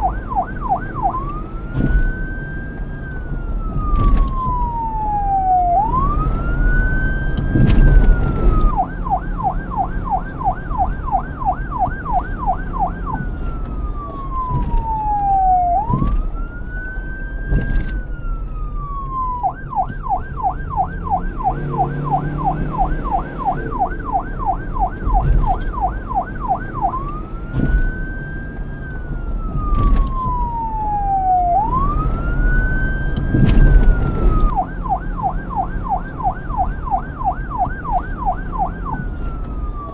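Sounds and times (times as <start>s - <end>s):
police siren wailing and yelping: 0.0s - 39.9s.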